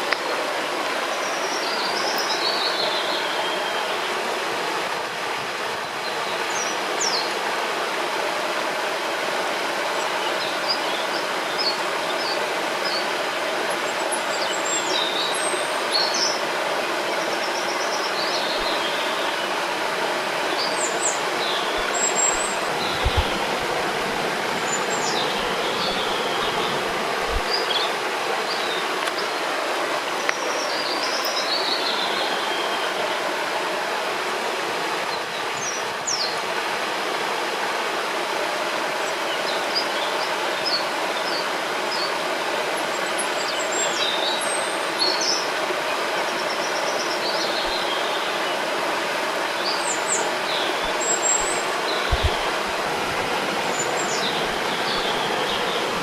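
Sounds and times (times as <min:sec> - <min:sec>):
rushing river water: 0:00.0 - 0:56.0
songbirds chirping: 0:09.6 - 0:34.3, 0:38.8 - 0:56.0
soft low thumps: 0:22.7 - 0:24.2, 0:52.0 - 0:53.4.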